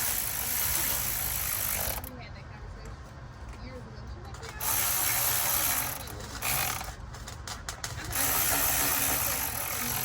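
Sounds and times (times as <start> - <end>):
electric ratchet motor whine: 8.1 - 10.0.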